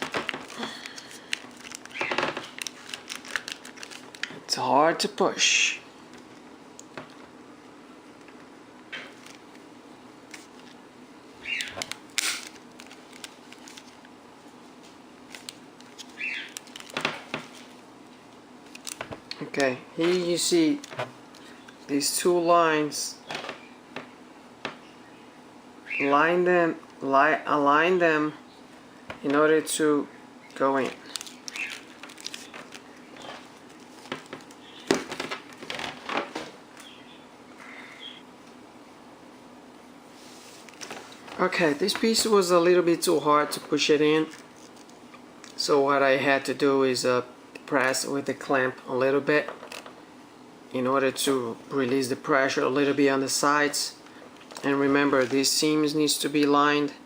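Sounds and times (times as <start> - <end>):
plastic squeaks: 1.6 - 3.4, 11.4 - 12.5, 16.0 - 17.1, 31.0 - 33.4.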